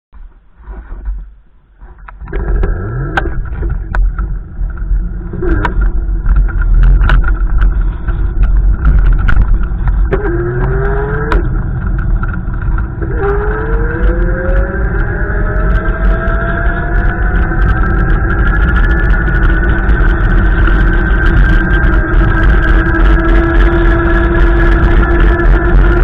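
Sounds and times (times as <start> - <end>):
storm wind buffeting microphone: 2.1 - 26.0.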